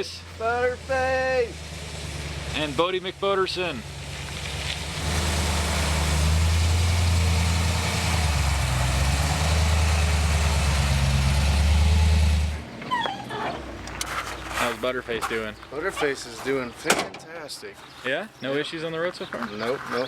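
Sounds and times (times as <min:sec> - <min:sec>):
car engine running low: 0:00.0 - 0:14.0.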